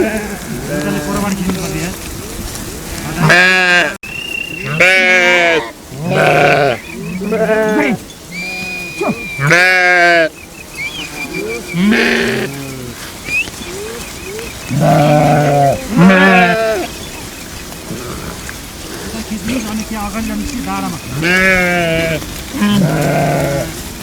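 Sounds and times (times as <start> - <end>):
sheep bleating: 0.0 - 2.0, 2.9 - 4.0, 4.6 - 10.4, 11.0 - 13.1, 14.7 - 17.0, 17.9 - 23.9.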